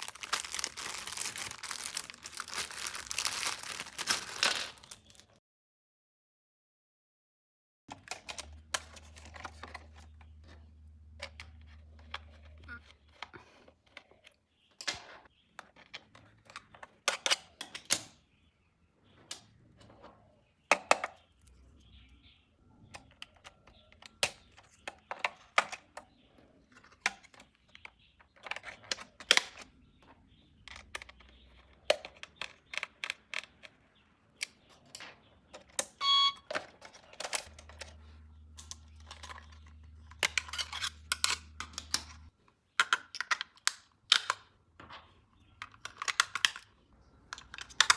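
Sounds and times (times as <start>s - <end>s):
packaging clicks and rustles: 0.0s - 5.4s, 7.9s - 14.3s, 23.1s - 33.8s, 34.4s - 44.5s, 45.4s - 47.9s
short electronic beep: 36.0s - 36.4s.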